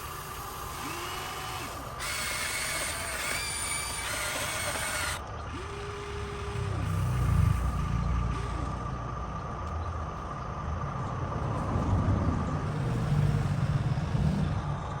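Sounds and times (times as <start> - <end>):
high motor whine: 0.0 - 15.0
low uneven rumble: 5.3 - 15.0.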